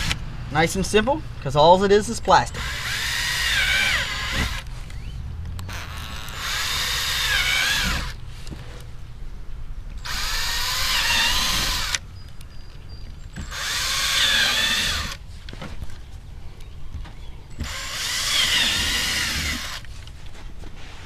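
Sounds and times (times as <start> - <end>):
electric drill drilling plastic: 2.6 - 5.0, 5.7 - 8.2, 10.0 - 12.0, 13.4 - 15.2, 17.6 - 19.9.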